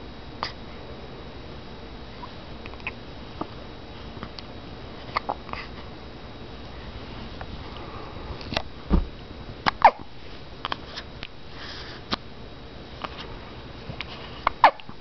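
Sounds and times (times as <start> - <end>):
person hiccuping: 14.6 - 14.9.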